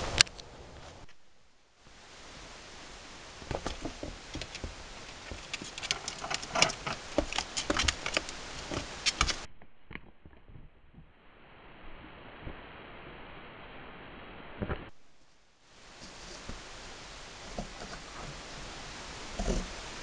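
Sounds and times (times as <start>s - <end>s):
claws tapping and scratching: 3.4s - 10.7s, 15.9s - 20.0s.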